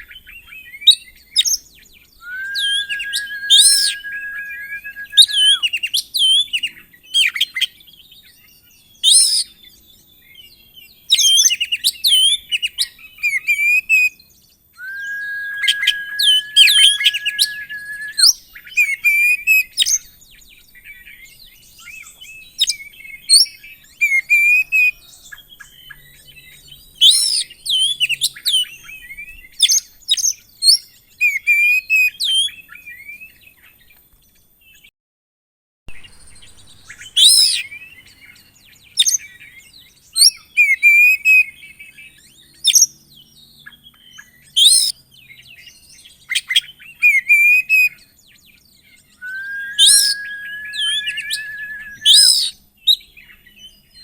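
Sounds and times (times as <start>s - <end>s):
bird singing chirps and whistles: 0.1s - 7.3s, 9.0s - 9.6s, 14.8s - 20.0s, 35.9s - 38.2s, 39.0s - 48.0s, 49.0s - 53.9s.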